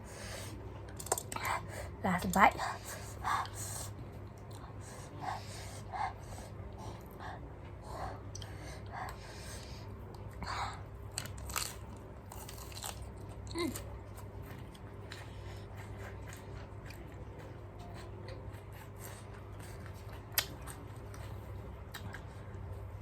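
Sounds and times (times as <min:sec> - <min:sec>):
chewing crunchy cabbage: 0:08.2 - 0:22.9.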